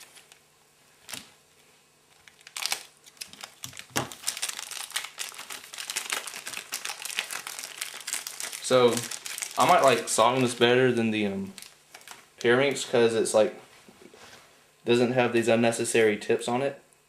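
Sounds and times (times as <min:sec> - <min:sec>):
packaging crinkling and tearing: 0:00.0 - 0:00.4, 0:01.0 - 0:01.4, 0:02.1 - 0:10.6, 0:11.4 - 0:12.8.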